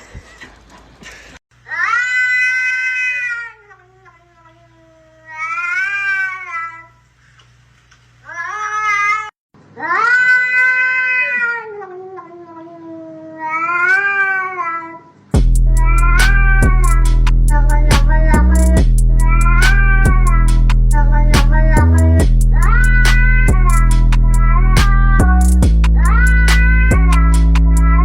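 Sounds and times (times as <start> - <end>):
cat yowling meows: 1.7 - 4.4, 5.3 - 6.9, 8.3 - 15.0, 19.2 - 20.4, 26.0 - 27.2.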